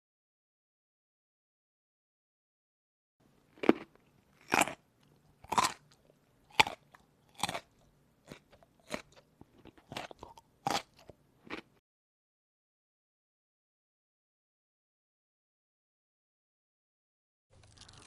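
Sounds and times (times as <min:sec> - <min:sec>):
crunchy food being chewed: 0:03.5 - 0:11.8, 0:17.6 - 0:18.0.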